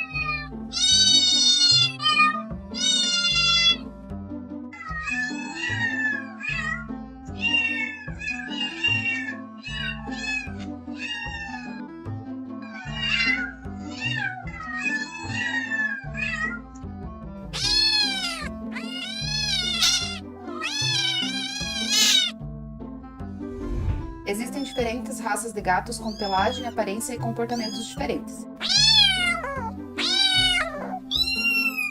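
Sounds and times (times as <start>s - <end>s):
cat meowing: 0.0s - 3.8s, 4.7s - 11.9s, 12.6s - 16.7s, 17.4s - 22.4s, 26.0s - 26.8s, 27.5s - 28.0s, 28.6s - 31.9s
background music: 0.0s - 31.9s.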